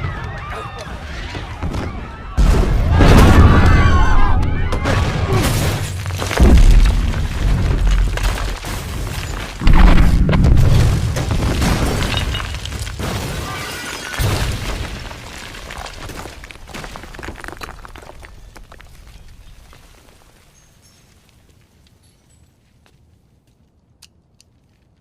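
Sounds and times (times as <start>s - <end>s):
crashing shattering debris: 1.6s - 20.7s
explosion rumble: 2.4s - 13.3s
heavy explosion: 2.4s - 13.5s.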